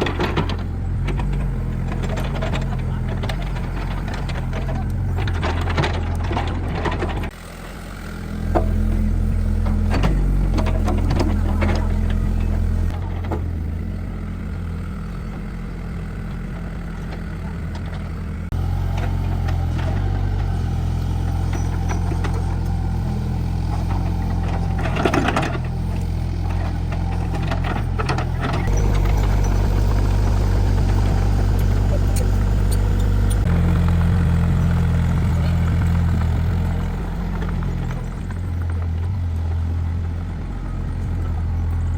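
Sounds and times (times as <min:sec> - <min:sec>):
engine running steadily: 0:00.0 - 0:41.9.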